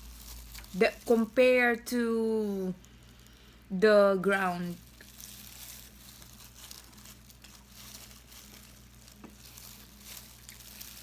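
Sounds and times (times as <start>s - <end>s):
crackly chewing: 0.0s - 1.4s, 4.8s - 11.0s.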